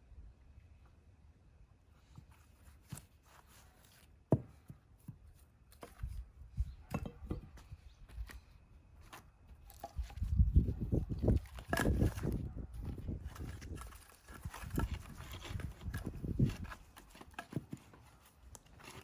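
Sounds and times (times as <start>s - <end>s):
axe striking firewood: 4.3s - 5.2s, 11.2s - 12.4s
wood knocks and thumps: 6.8s - 7.6s.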